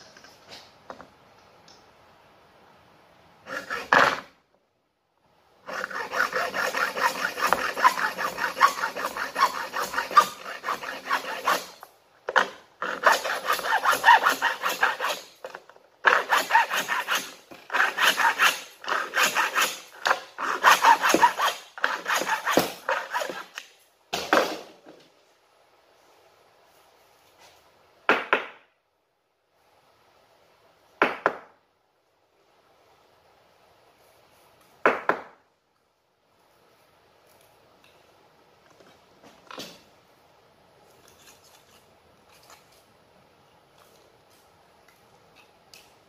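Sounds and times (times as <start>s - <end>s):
hand saw cutting plastic pipe: 3.5s - 4.3s, 5.6s - 23.7s.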